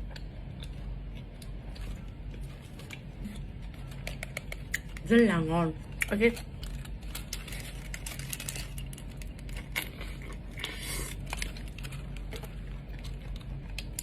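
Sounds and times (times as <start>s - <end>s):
crinkling wrapper rustle: 6.3s - 14.0s.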